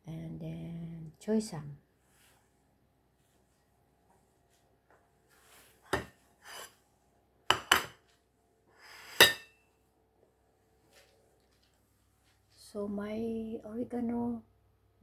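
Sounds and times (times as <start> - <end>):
dishes scraping: 6.0 - 6.8, 7.5 - 8.0, 8.9 - 9.6
dishes clinking: 7.5 - 8.0, 9.0 - 9.6.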